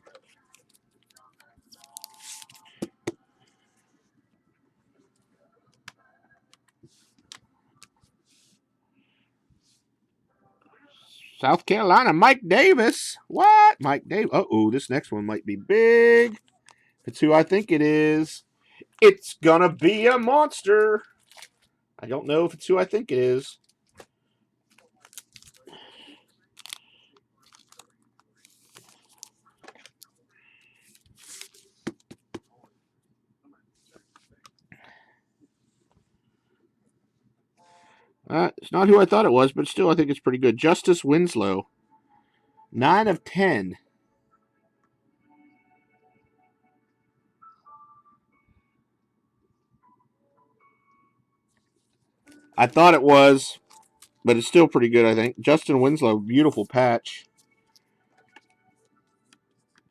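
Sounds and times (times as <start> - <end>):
trading cards rustling and clicking: 0.0 - 3.1, 21.0 - 21.7, 24.7 - 26.0, 26.6 - 30.1, 30.7 - 32.5.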